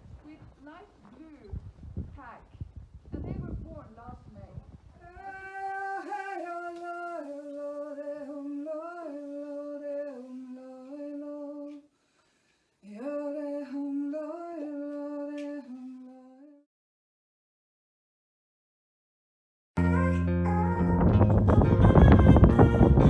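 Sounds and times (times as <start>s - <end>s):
person humming a melody: 19.8s - 23.0s.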